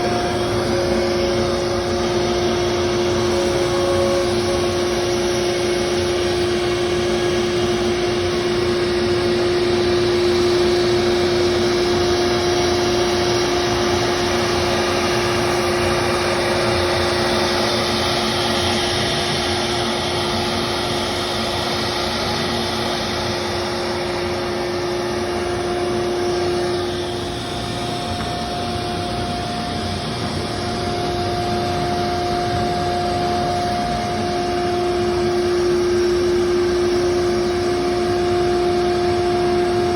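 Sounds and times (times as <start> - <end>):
cnc spindle whine: 0.0 - 39.9
cutting and motor noise: 0.0 - 39.9.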